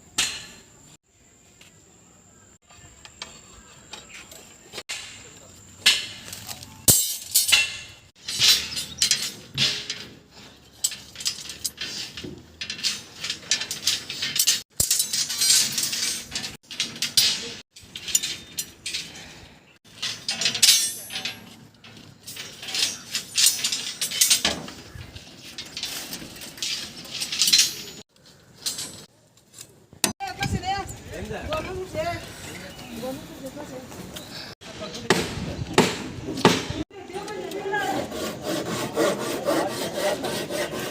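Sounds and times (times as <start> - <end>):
metallic clinks and scrapes: 2.7 - 30.2.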